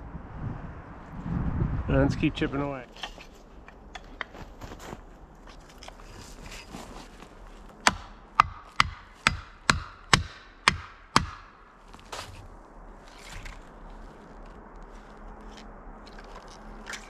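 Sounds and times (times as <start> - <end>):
axe chopping into wood: 7.8 - 12.3.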